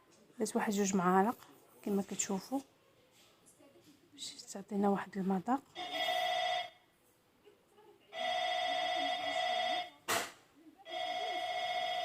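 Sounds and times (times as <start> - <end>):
electronic ringing tone: 5.8 - 6.8, 8.2 - 10.0, 10.9 - 12.0.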